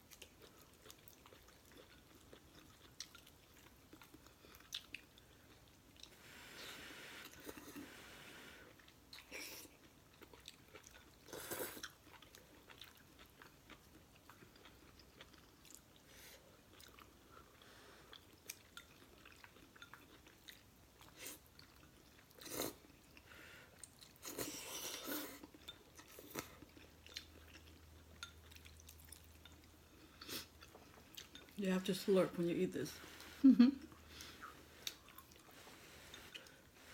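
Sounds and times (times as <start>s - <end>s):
close-up chewing noodles: 0.0s - 31.6s, 33.0s - 36.9s.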